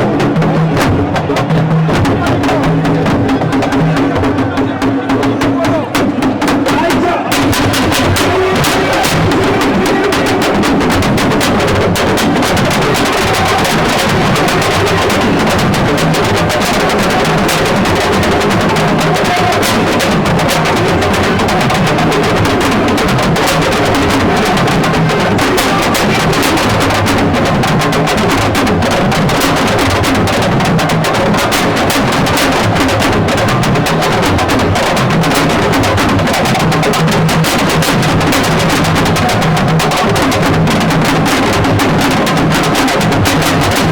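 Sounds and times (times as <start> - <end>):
music with fast drumming: 0.0 - 43.9.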